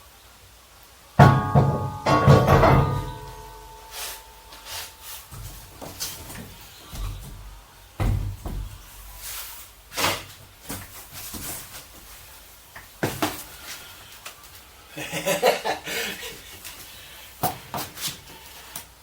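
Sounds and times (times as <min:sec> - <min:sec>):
wooden cabinet parts knocking: 0:01.2 - 0:03.3, 0:07.0 - 0:08.9.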